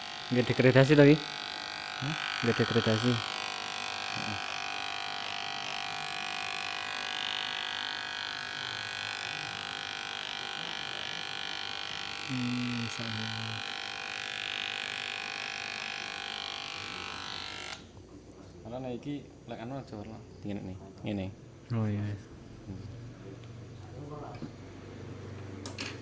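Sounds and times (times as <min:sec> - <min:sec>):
electric hair clipper buzzing: 0:00.0 - 0:17.9.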